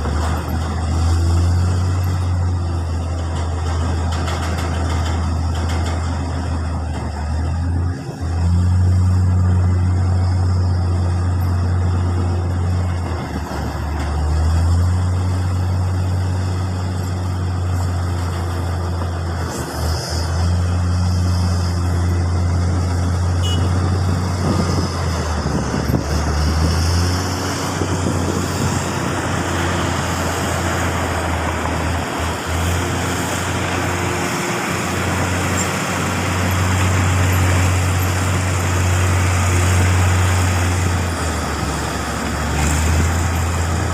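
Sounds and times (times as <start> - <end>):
diesel machinery humming: 0.0 - 43.9.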